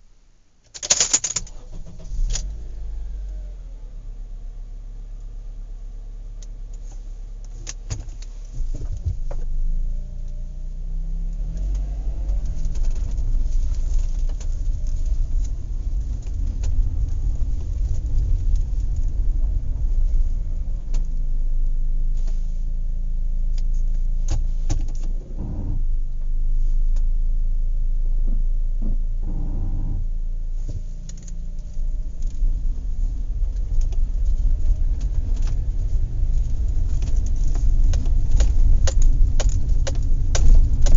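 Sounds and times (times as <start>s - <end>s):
car engine and road rumble: 0.0s - 40.9s
loose things rattling: 0.7s - 2.5s.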